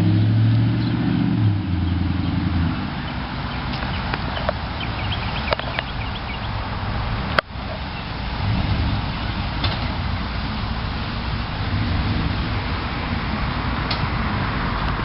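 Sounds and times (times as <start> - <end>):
truck engine and road noise: 0.0 - 15.0.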